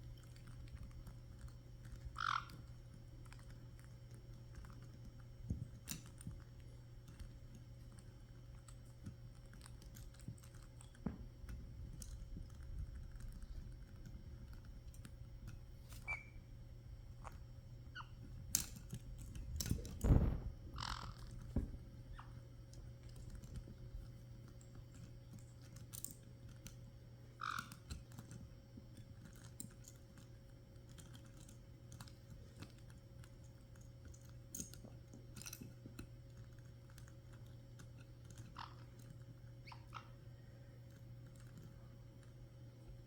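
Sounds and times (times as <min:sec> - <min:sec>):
parrots chewing with beaks: 0:00.0 - 0:42.6
parrot squeaks: 0:02.2 - 0:02.5, 0:16.0 - 0:16.4, 0:17.9 - 0:18.1, 0:20.8 - 0:21.3, 0:39.6 - 0:40.1.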